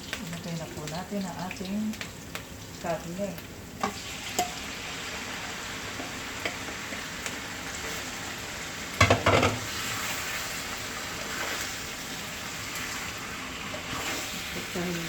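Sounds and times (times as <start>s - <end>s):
meat sizzling in a pan: 0.0s - 15.0s
utensil scraping a pan: 12.7s - 14.4s.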